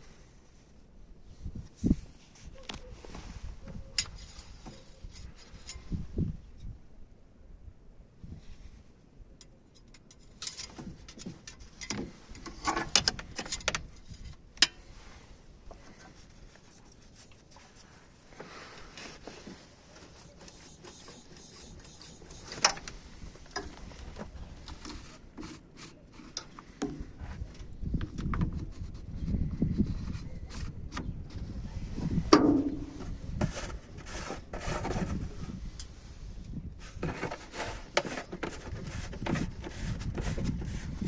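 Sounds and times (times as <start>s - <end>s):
rubbing: 15.8s - 23.1s.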